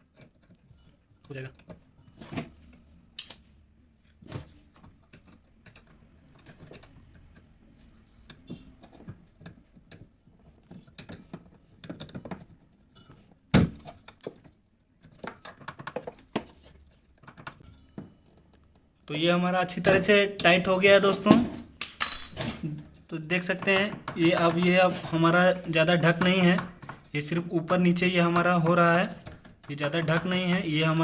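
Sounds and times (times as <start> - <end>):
spanner clinking on metal: 22.0 - 22.5.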